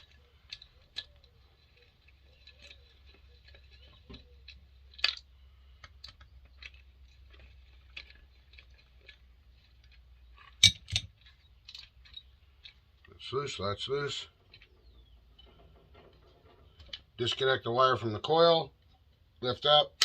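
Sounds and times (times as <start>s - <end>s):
hand tools clicking and tapping: 0.0s - 9.2s, 9.8s - 13.1s.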